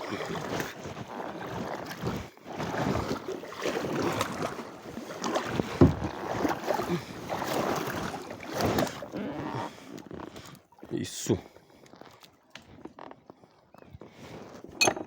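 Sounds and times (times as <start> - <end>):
knock against kayak hull: 5.8 - 6.2.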